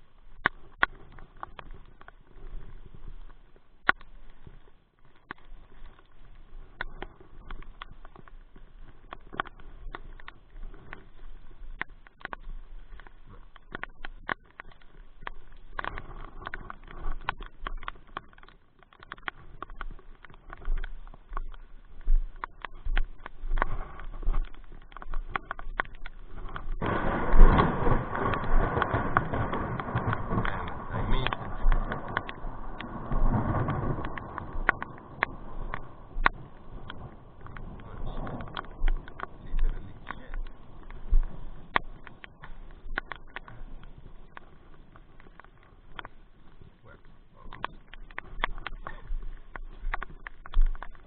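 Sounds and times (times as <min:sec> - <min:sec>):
rain falling: 0:00.0 - 0:51.0
heavy rain hiss: 0:26.8 - 0:42.7.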